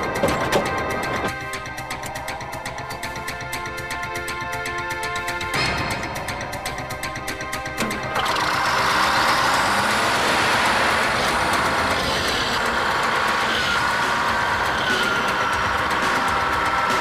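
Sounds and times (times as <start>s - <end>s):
music: 0.0s - 17.0s
bulldozer diesel engine running: 5.1s - 17.0s.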